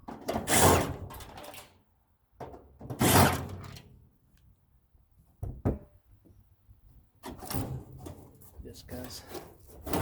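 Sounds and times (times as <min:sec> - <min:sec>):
sheet metal scraping and sliding: 0:00.1 - 0:01.8, 0:02.9 - 0:03.8, 0:07.2 - 0:10.0.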